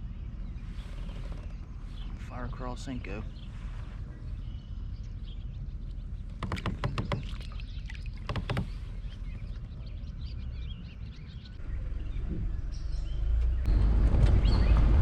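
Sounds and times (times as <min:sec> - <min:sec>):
wind rumble on microphone: 0:00.0 - 0:15.0
water splashing around boat: 0:00.6 - 0:10.6.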